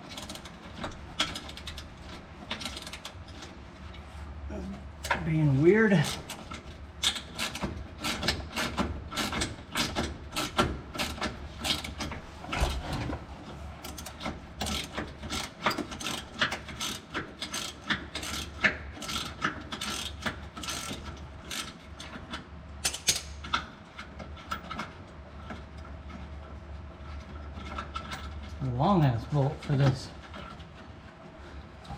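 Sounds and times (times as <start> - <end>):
hand ratchet clicking: 13.9 - 21.8.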